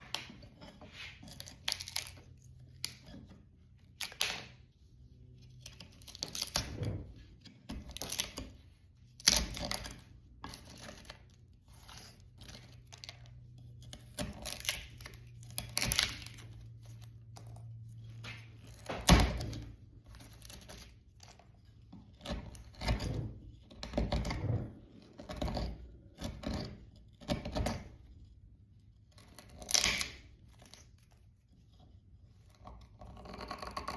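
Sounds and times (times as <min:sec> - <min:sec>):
chisel scraping wood: 0:00.0 - 0:33.9.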